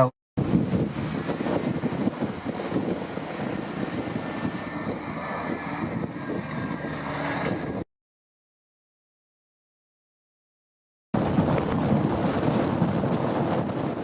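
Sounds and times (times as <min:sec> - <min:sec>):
tractor diesel engine running: 0:00.4 - 0:07.8
wind buffeting the microphone: 0:00.4 - 0:07.8, 0:11.2 - 0:14.0.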